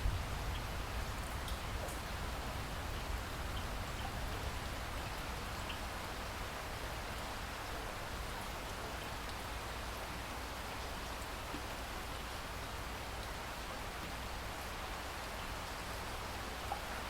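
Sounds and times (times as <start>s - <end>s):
steady rain hiss: 0.0s - 17.0s
raindrops ticking: 0.5s - 2.1s.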